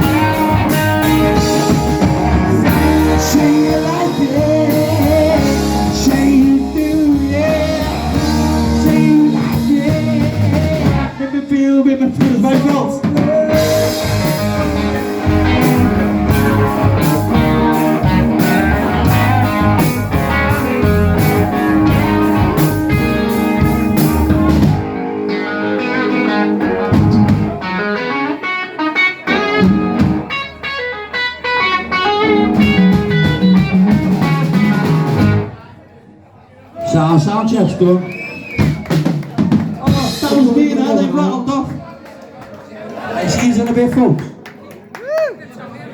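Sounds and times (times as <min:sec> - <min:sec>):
drum kit: 0:00.0 - 0:11.3, 0:12.1 - 0:25.1, 0:25.8 - 0:28.0, 0:29.3 - 0:35.6, 0:38.4 - 0:41.8
electric guitar: 0:00.0 - 0:11.4, 0:12.2 - 0:35.6
blues-rock band playing: 0:00.0 - 0:35.6, 0:38.5 - 0:41.2.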